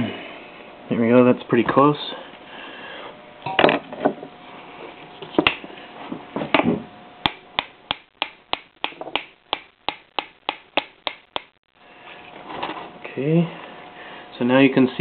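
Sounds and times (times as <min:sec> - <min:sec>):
sharp metal clicks and taps: 0:07.3 - 0:11.6.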